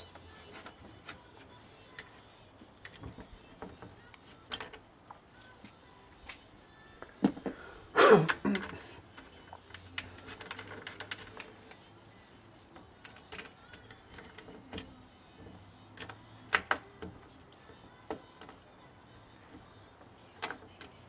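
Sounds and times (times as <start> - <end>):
hand tools clicking and knocking: 0.0 - 4.8, 7.0 - 11.9, 12.6 - 18.6.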